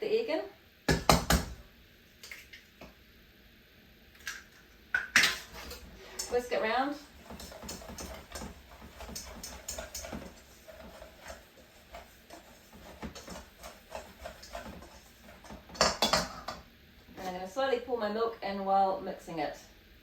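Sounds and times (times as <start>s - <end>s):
whisk clicking against bowl: 5.0s - 16.6s.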